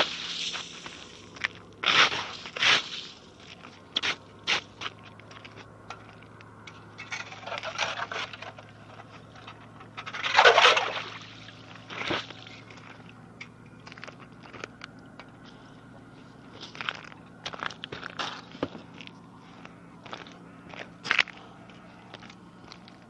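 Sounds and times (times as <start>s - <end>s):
scraping on ice: 0.0s - 3.2s
crunching on snow: 0.0s - 6.4s, 11.1s - 23.0s.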